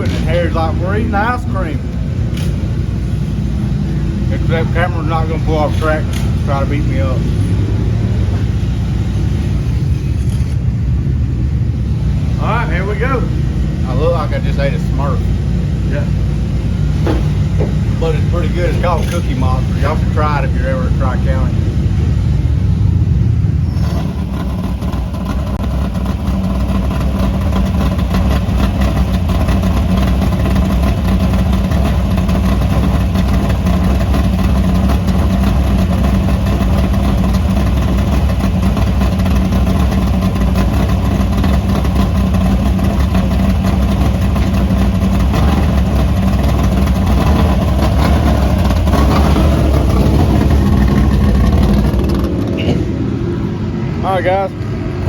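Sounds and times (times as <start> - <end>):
race car engines droning: 0.0 - 55.0.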